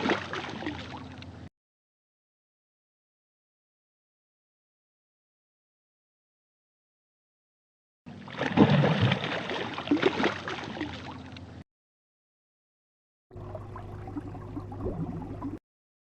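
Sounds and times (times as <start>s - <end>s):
water splashing and gurgling: 0.0s - 1.5s, 8.1s - 11.5s, 13.3s - 15.6s.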